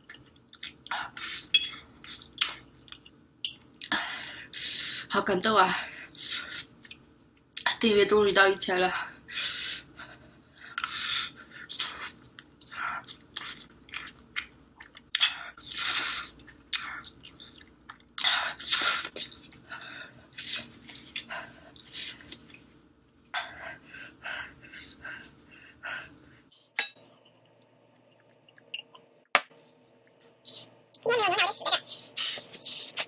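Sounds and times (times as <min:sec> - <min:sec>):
person chewing noodles: 0:00.0 - 0:03.1, 0:11.6 - 0:23.4.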